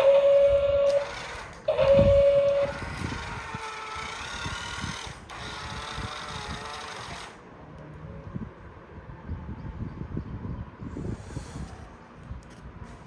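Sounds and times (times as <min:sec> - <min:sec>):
horn-like beeps: 0:00.0 - 0:03.0
small motor whirring: 0:00.0 - 0:07.4.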